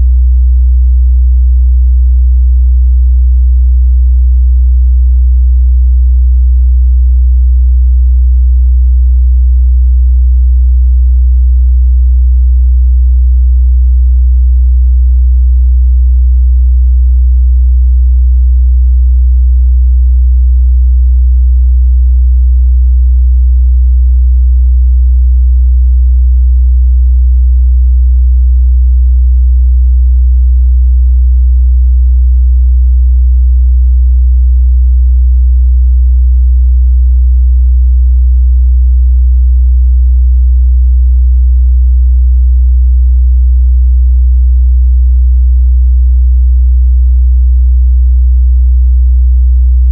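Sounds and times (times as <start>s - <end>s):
low sine test tone: 0.0s - 35.4s.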